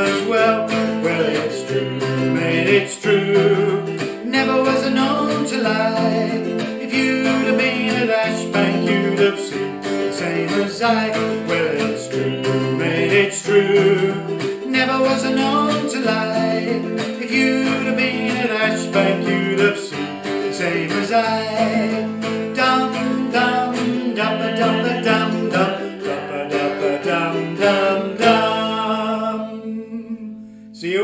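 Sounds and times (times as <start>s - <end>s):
guitar and ukulele strumming: 0.0s - 30.7s.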